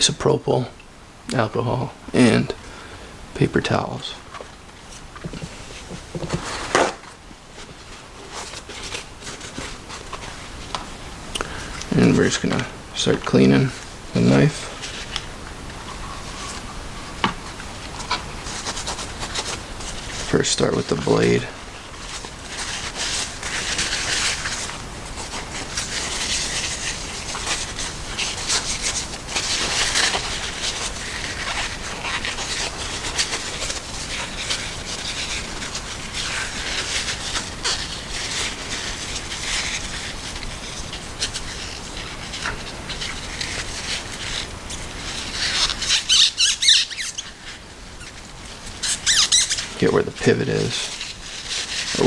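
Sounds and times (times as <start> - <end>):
paper towel rubbing steel blade: 15.8 - 47.7.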